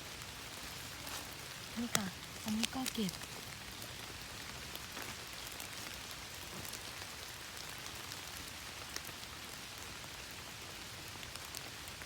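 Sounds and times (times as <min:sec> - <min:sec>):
steady rain: 0:00.0 - 0:12.0
sharp raindrop ticks: 0:01.5 - 0:09.8.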